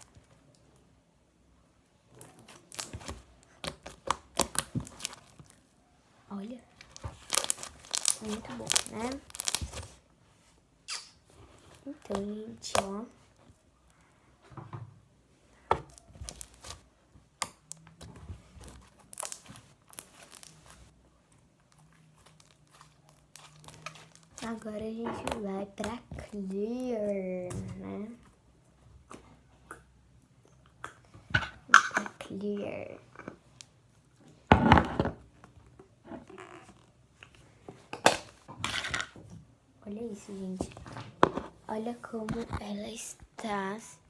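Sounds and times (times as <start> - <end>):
slime crackling and tearing: 2.2 - 5.6, 6.8 - 10.0, 15.9 - 16.8, 18.8 - 20.9, 22.2 - 24.6.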